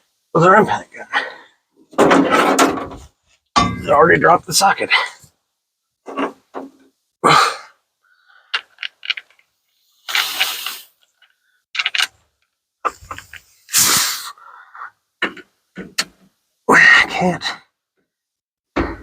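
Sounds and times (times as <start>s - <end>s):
metal tool clank: 3.6s - 4.0s.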